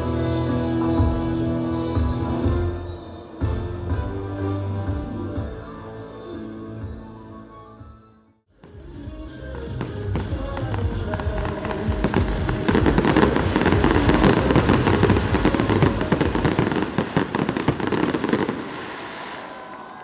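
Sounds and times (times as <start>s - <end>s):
fireworks crackling: 8.6s - 20.0s.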